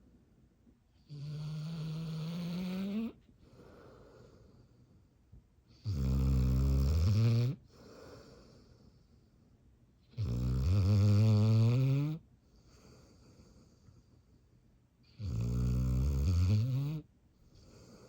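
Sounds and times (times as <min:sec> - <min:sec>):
dog snoring: 0:01.0 - 0:03.2, 0:05.7 - 0:08.7, 0:10.1 - 0:12.2, 0:15.1 - 0:18.0.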